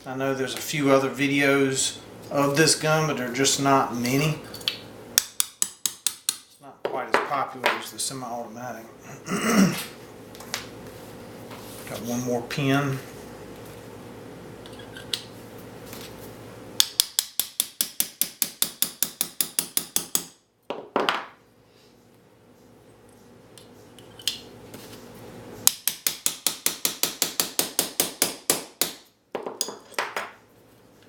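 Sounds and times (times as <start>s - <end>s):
small hammer tapping metal: 5.2s - 6.6s, 16.8s - 20.3s, 25.7s - 30.3s.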